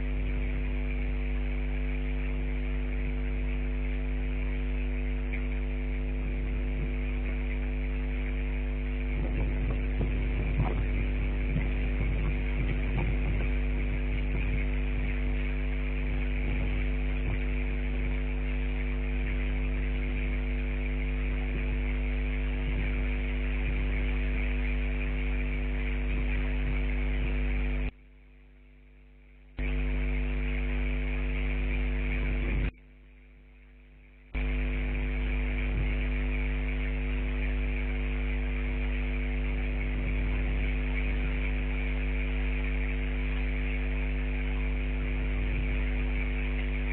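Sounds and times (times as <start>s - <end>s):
electrical hum with buzz: 0.0s - 46.9s.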